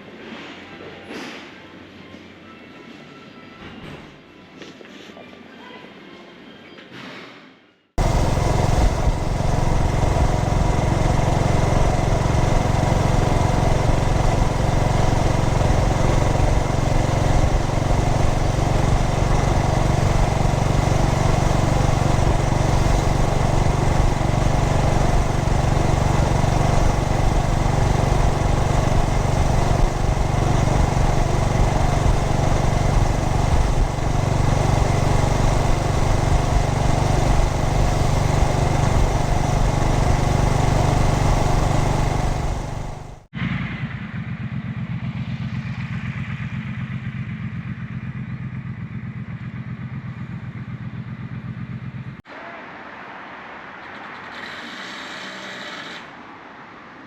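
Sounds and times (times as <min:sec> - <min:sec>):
motorcycle engine running: 0:08.0 - 0:52.2.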